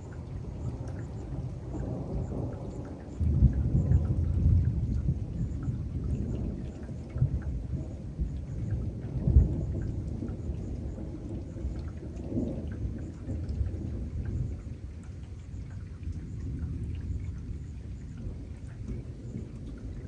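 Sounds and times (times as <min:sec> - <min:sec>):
thunder rumbling: 0:00.0 - 0:15.0
raindrops ticking: 0:00.0 - 0:20.0.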